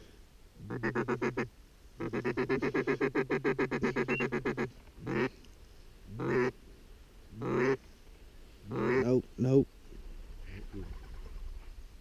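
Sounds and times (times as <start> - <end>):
duck quacking: 0.6 - 5.3, 6.1 - 6.5, 7.4 - 7.8, 8.7 - 9.2.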